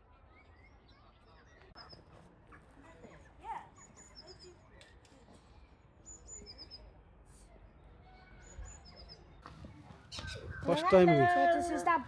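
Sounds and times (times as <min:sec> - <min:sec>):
murmur of voices: 0:08.8 - 0:12.0.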